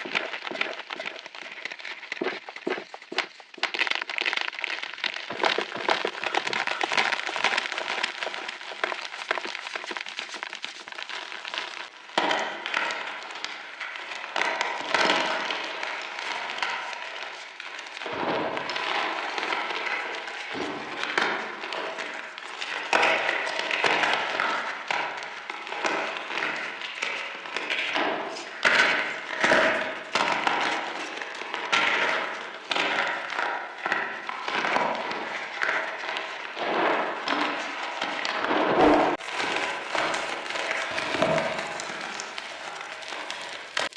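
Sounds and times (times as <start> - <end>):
sharp cracks: 0.0 - 13.5, 38.8 - 43.9
chalk crunching and crumbling: 39.2 - 43.9.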